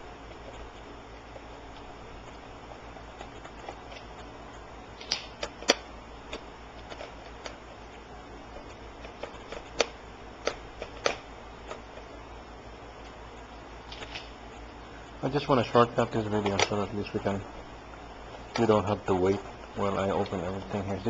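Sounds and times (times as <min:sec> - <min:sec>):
low steady hum: 0:00.0 - 0:21.0
laptop parts clicking and knocking: 0:05.0 - 0:07.6, 0:08.7 - 0:12.0.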